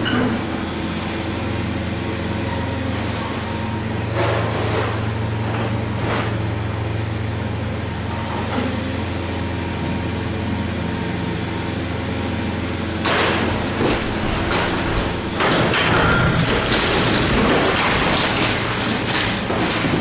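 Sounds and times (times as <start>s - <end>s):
diesel engine running: 0.0s - 20.0s
debris crashing down: 13.0s - 20.0s.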